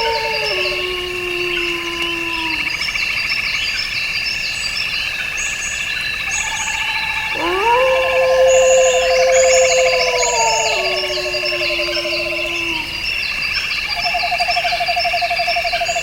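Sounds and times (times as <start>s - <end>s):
frogs and insects trilling: 0.0s - 16.0s
low swooping call: 7.3s - 13.2s.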